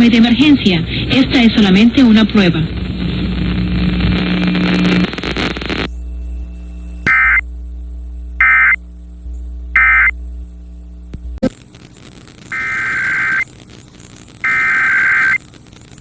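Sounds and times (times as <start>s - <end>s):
steady low hum: 0.0s - 16.0s
radio hiss: 0.1s - 10.2s, 10.9s - 16.0s
short high data bursts: 7.0s - 7.4s, 8.4s - 8.8s, 9.8s - 10.1s, 12.5s - 13.5s, 14.4s - 15.4s.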